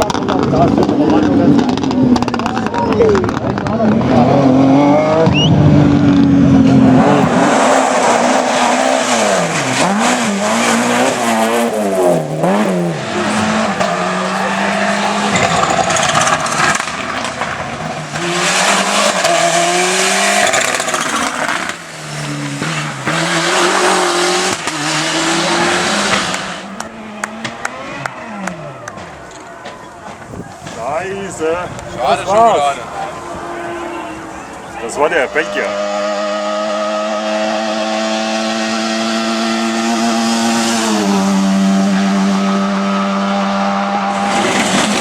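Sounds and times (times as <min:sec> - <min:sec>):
broad rushing noise: 0:00.0 - 0:36.0, 0:43.9 - 0:45.0
rally car engine revving: 0:00.0 - 0:45.0.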